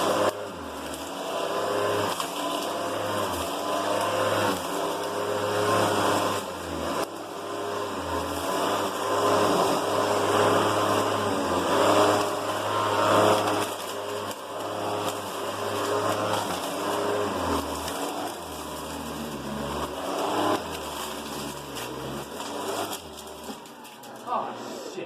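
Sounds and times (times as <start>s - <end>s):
upright vacuum cleaner running: 0.0s - 24.8s.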